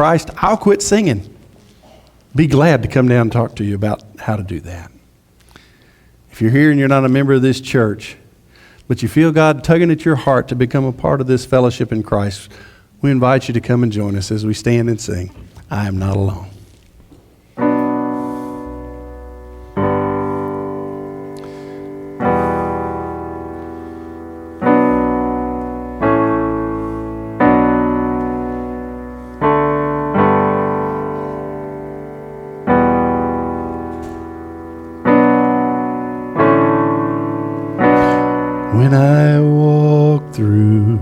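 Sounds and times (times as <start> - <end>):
piano chords: 17.4 - 41.0.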